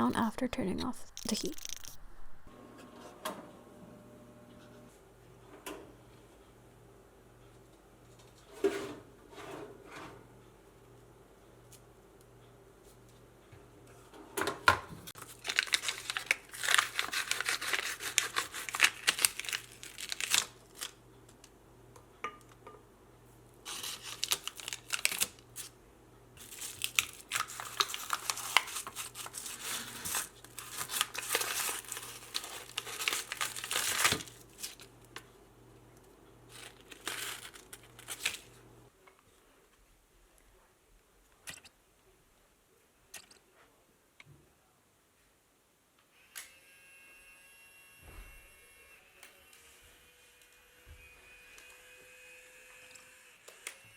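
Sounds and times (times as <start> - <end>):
sheet crinkling and rustling: 15.2 - 20.9, 26.4 - 34.8, 36.5 - 38.5.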